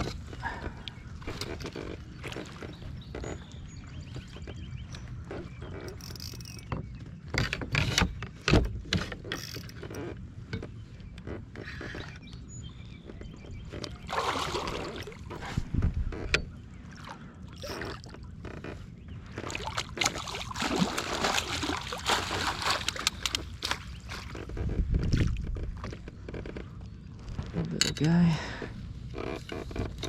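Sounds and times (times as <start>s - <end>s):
water sloshing against kayak: 0.0s - 27.6s
small clicks and knocks: 4.4s - 12.4s.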